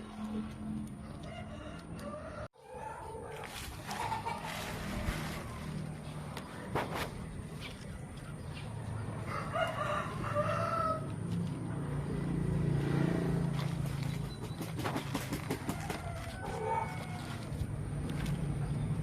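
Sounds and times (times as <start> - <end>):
rooster crowing: 1.2 - 3.1, 9.2 - 11.2, 15.6 - 17.6.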